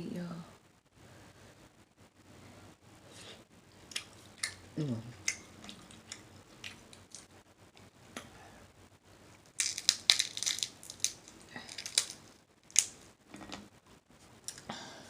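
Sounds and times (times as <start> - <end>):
crab shells cracking: 3.8 - 7.3, 9.4 - 13.1.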